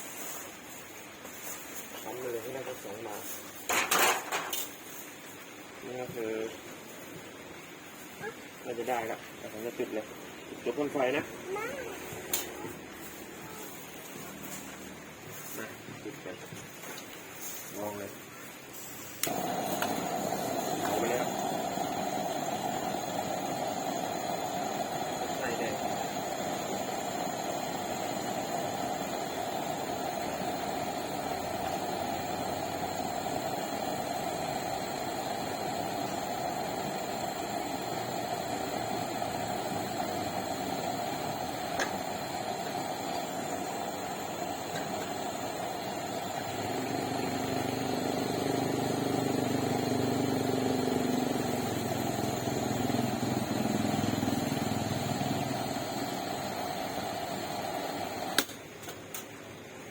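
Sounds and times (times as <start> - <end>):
hissing roar of lantern flame: 19.0 - 58.5.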